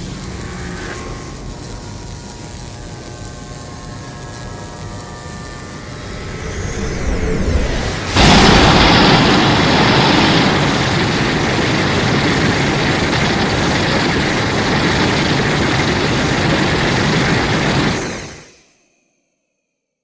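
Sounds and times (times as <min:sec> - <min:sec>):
dense monster rumble: 0:05.9 - 0:13.8.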